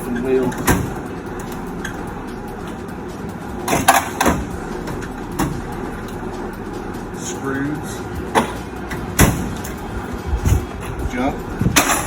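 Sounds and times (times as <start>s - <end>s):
background hum: 0.0s - 12.0s
tools clattering in metal drawers: 11.8s - 12.0s.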